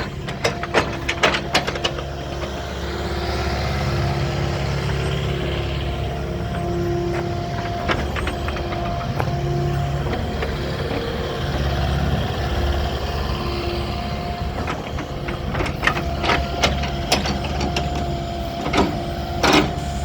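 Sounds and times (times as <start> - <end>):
excavator diesel engine running: 0.0 - 20.0.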